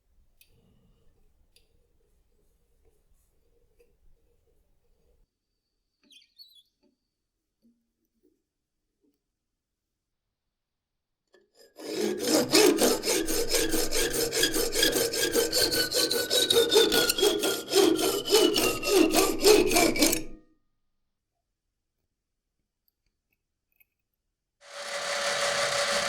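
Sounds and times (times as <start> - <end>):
hand tool strokes: 11.8 - 20.4, 24.7 - 26.0.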